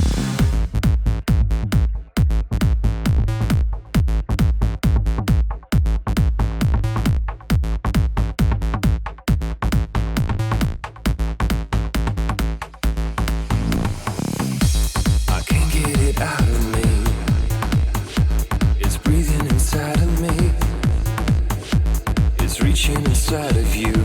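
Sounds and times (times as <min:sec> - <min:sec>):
electronic dance music: 0:00.0 - 0:02.8, 0:12.6 - 0:24.0.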